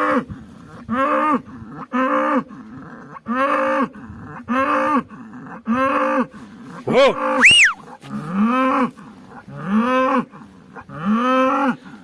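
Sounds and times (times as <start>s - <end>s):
bull bellowing: 6.9s - 11.8s.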